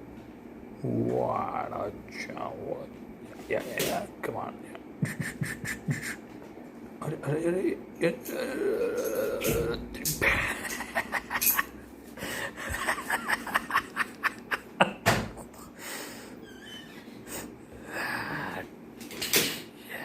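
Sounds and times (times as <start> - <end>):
man laughing: 4.8 - 6.3, 10.0 - 15.8.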